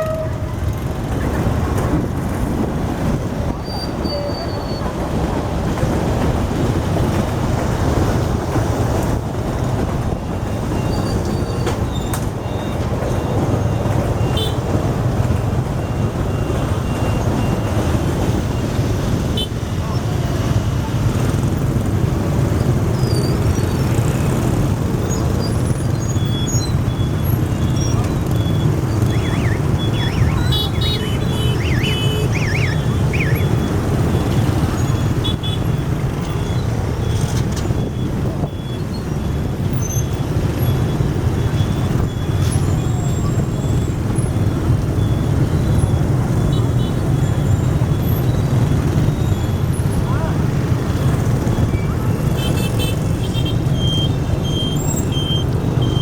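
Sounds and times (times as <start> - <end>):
road traffic rumble: 0.0 - 56.0
level crossing warning bell: 26.2 - 39.7.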